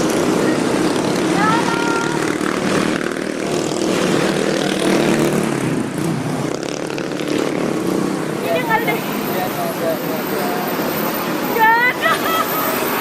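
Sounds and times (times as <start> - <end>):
road traffic engine drone: 0.0 - 13.0
tyre and road noise: 0.0 - 13.0.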